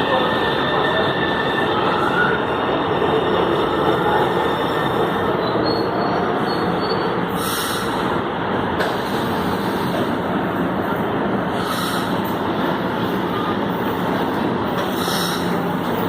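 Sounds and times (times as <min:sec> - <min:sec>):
train wheels rumbling on rail: 0:00.0 - 0:16.0
high wheel squeal: 0:04.7 - 0:07.9.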